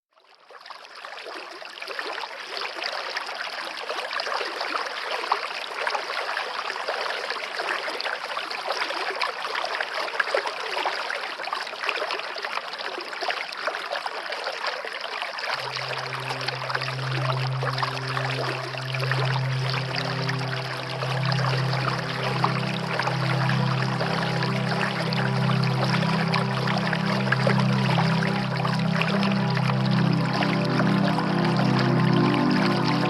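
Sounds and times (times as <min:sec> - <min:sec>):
stream babbling: 0:15.5 - 0:33.0.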